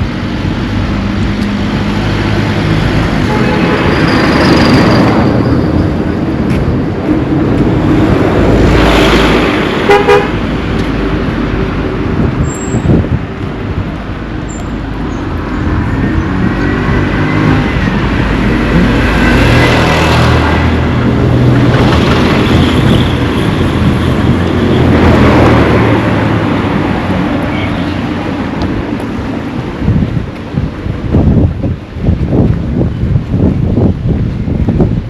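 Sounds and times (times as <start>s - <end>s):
road traffic rumble: 0.0s - 35.0s
vehicle horn tooting: 3.2s - 4.1s, 9.8s - 10.4s.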